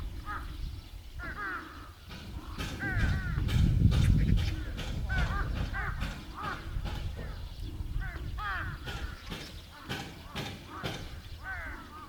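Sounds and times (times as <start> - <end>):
crows cawing: 0.2 - 0.6, 1.2 - 3.5, 4.6 - 12.0.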